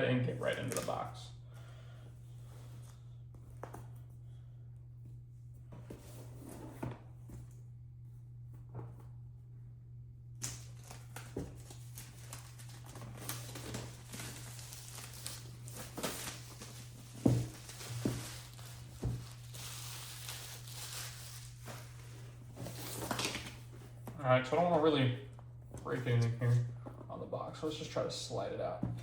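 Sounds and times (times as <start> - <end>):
steady low hum: 0.0 - 29.0
packaging tearing and crinkling: 10.4 - 21.8.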